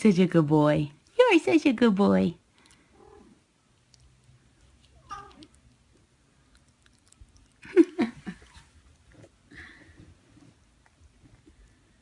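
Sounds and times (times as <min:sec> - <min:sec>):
cat crying: 0:05.0 - 0:05.5.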